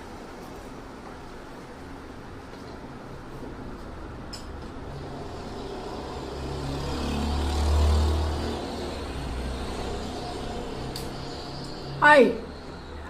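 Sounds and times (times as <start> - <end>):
vehicle passing: 4.7 - 13.0.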